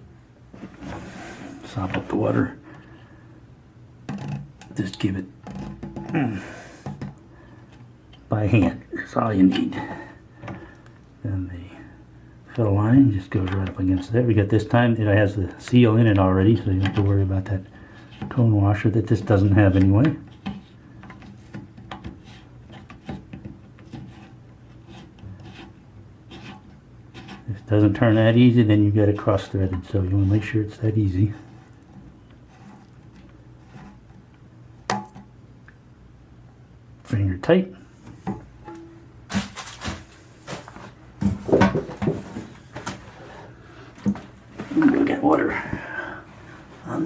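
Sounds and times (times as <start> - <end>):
knocks and clunks of toilet parts: 4.0 - 7.2, 9.4 - 10.7, 16.1 - 17.4, 19.2 - 24.2, 34.8 - 35.4, 38.1 - 40.0, 41.2 - 43.0
steady low hum: 23.6 - 47.0.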